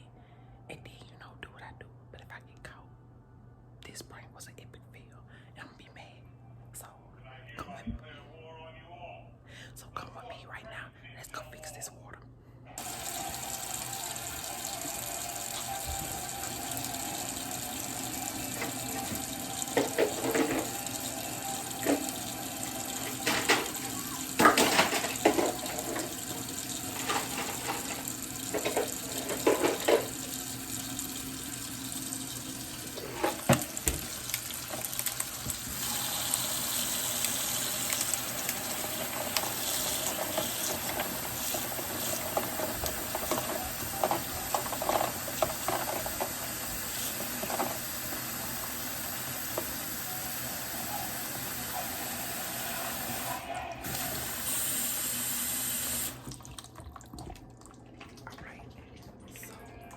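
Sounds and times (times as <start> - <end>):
tap running into a sink: 12.8 - 49.9
items knocking and clattering: 18.4 - 21.0, 22.9 - 30.3, 33.1 - 35.8, 39.2 - 46.4.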